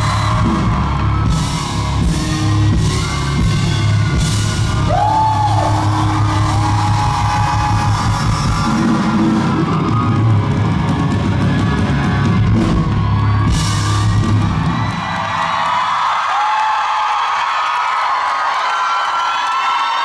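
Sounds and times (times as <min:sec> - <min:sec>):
live rock band playing: 0:00.0 - 0:14.9
audience screaming: 0:00.0 - 0:20.0
crowd cheering: 0:00.0 - 0:20.0.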